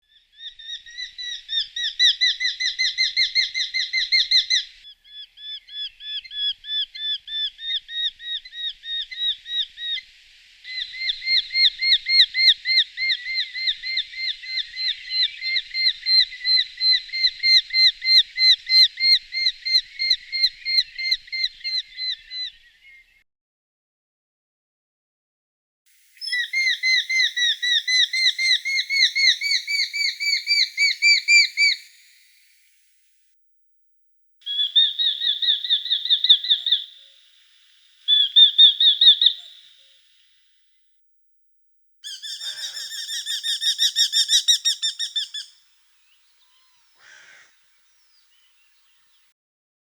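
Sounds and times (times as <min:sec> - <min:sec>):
young falcon calling: 0:00.4 - 0:10.0, 0:10.7 - 0:22.6, 0:26.2 - 0:32.6, 0:34.4 - 0:40.4, 0:42.0 - 0:49.3
falcon calling sharp notes: 0:42.0 - 0:45.6, 0:46.4 - 0:48.0.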